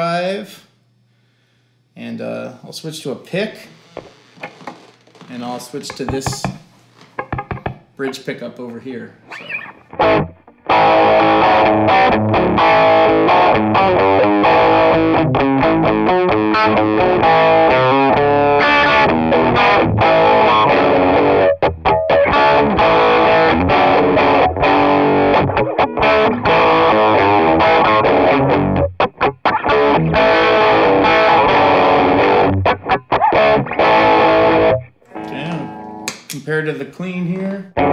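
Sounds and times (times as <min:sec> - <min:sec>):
distorted electric guitar riffs: 0:09.4 - 0:36.1.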